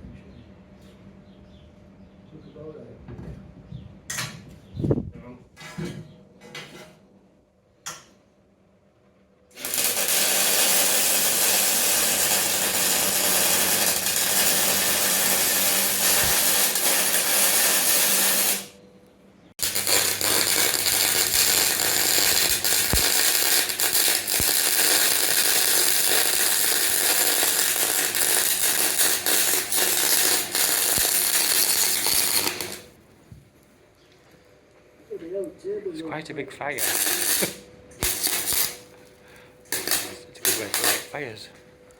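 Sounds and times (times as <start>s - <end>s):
electrical hum: 0.0s - 41.9s
arc welding crackling: 9.5s - 18.8s, 19.6s - 33.0s, 36.1s - 41.5s.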